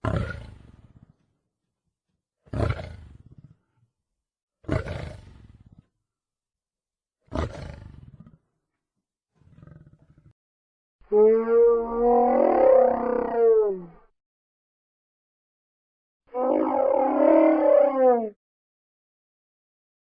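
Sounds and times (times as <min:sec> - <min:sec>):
lion roaring: 0:00.0 - 0:01.0, 0:02.5 - 0:03.7, 0:04.6 - 0:05.8, 0:07.3 - 0:08.4, 0:11.1 - 0:14.1, 0:16.3 - 0:18.4.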